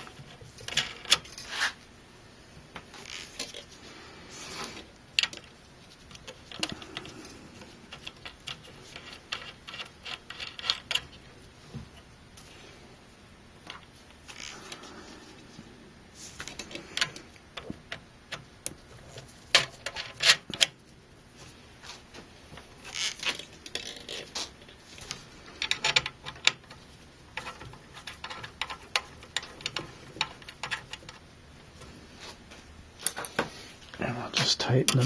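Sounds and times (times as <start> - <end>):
small metal parts clicking and scraping: 4.6 - 11.3, 18.3 - 20.8, 22.8 - 31.2.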